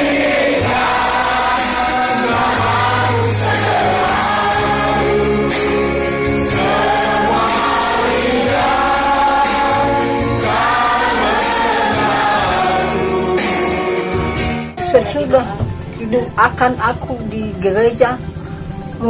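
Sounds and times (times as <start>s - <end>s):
group of voices singing: 0.0s - 14.8s.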